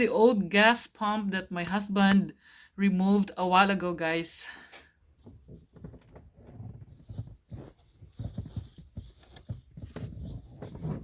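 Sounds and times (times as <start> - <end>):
soft knocks and rustling: 5.1 - 11.0.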